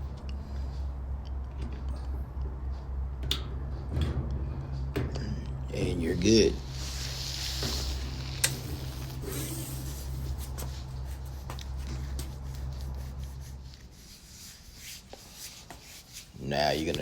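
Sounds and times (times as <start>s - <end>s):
steady low hum: 0.0s - 17.0s
hands rubbing hose fittings: 6.6s - 17.0s.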